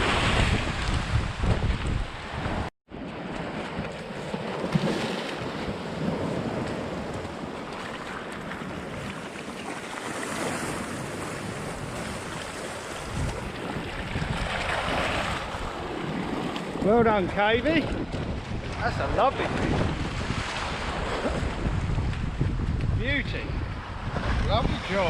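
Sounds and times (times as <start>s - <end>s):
wind buffeting microphone: 0.0s - 2.7s, 10.5s - 25.0s
waves on rocky shore: 0.0s - 22.4s, 23.8s - 25.0s.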